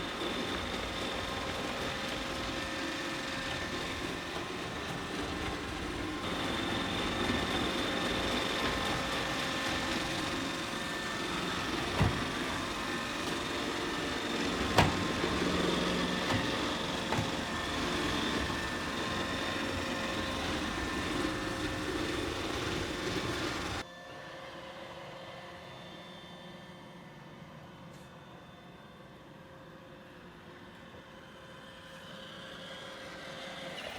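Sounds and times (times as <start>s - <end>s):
robot vacuum whirring: 0.0s - 23.8s.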